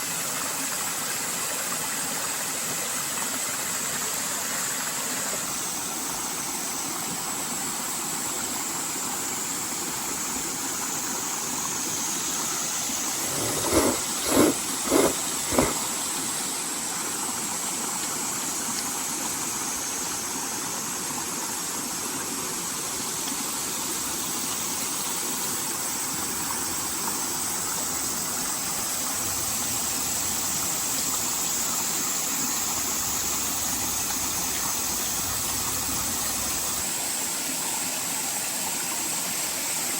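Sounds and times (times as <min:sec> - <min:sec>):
steady rushing noise: 0:13.2 - 0:15.8.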